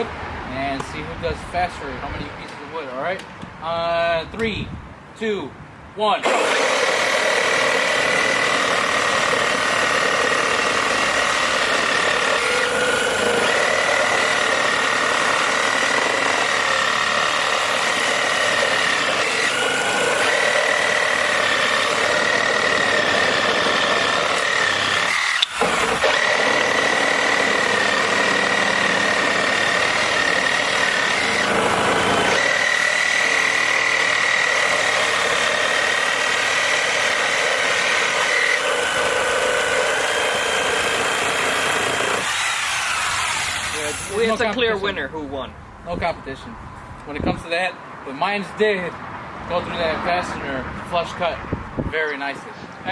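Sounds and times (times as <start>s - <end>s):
reciprocating saws cutting wood: 6.2s - 44.7s.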